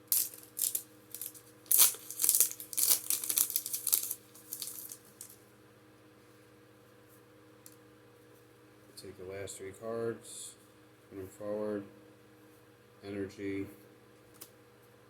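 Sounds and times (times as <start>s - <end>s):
foil wrapper tearing and crinkling: 0.0s - 5.4s.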